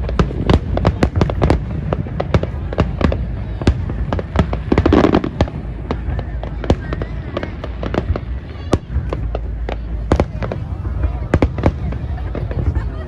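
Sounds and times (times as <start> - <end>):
fireworks crackling: 0.0 - 13.0
fireworks cracks and bangs: 0.0 - 13.0
low rumble: 0.0 - 13.0.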